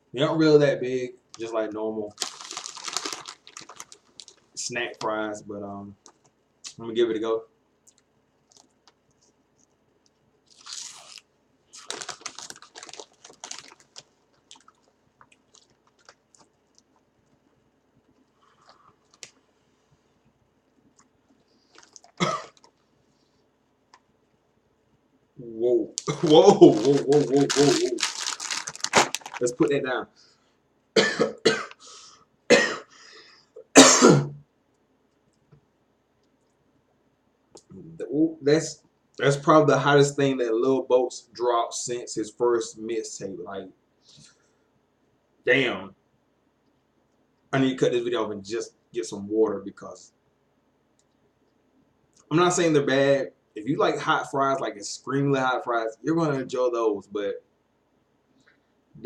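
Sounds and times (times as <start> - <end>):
snack bag rustling: 2.1 - 4.5, 10.5 - 17.0, 21.6 - 22.8, 26.0 - 29.7
person crunching snack: 2.2 - 4.4, 10.5 - 17.0, 21.7 - 22.8, 26.0 - 29.5
man coughing: 22.2 - 22.6, 31.0 - 31.8, 32.5 - 33.0, 33.7 - 34.4.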